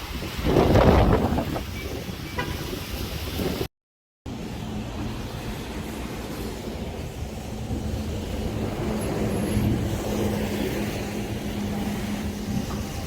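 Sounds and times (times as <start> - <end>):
vehicle engine hum: 4.3 - 13.0.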